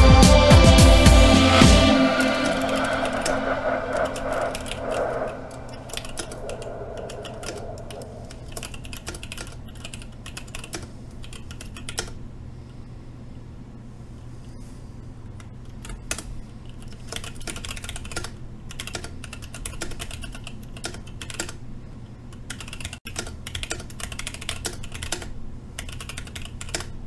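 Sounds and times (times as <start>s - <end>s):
mechanical keyboard typing: 8.3s - 12.2s, 15.8s - 21.6s, 22.4s - 27.0s.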